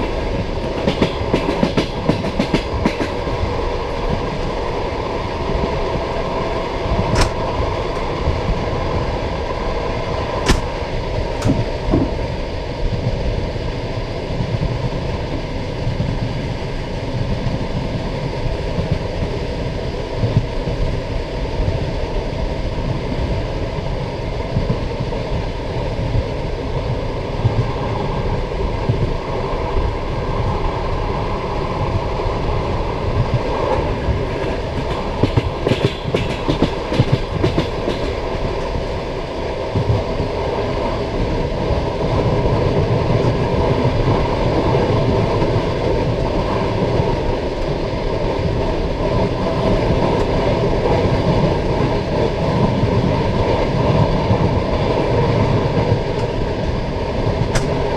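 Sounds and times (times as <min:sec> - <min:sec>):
train wheels rumbling on rails: 0:00.0 - 0:57.9
sharp clicks from running gear: 0:07.2 - 0:07.5, 0:10.4 - 0:10.8.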